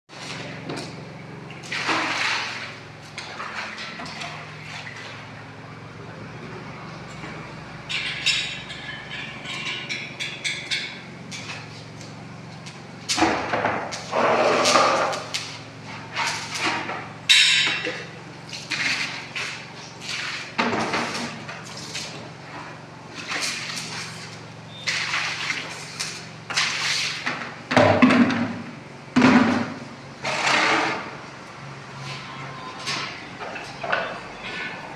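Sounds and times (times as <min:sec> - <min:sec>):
loud rough noise: 0:13.6 - 0:15.3.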